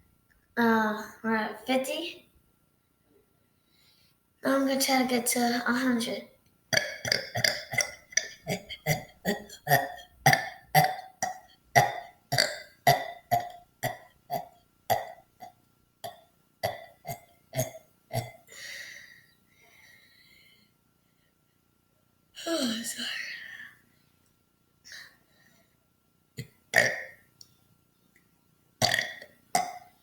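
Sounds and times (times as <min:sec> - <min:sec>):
person burping: 0:06.7 - 0:18.5, 0:26.4 - 0:27.2, 0:28.8 - 0:30.0
breathy exhale: 0:18.5 - 0:20.8.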